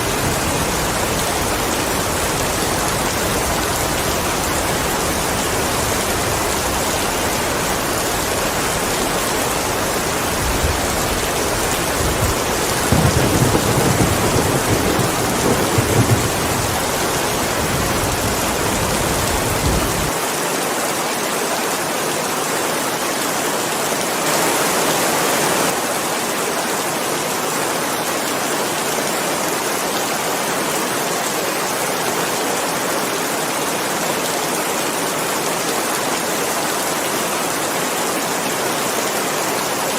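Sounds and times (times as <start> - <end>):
steady rain: 0.0 - 39.9
thunder rumble: 9.8 - 20.1.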